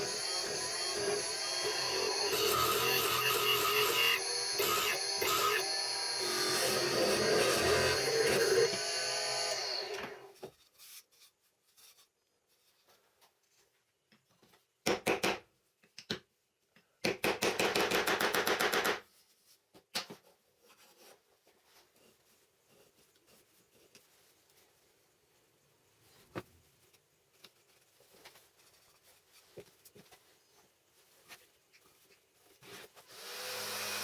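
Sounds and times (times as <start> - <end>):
power tool spinning down: 0.0 - 10.3, 33.1 - 34.0.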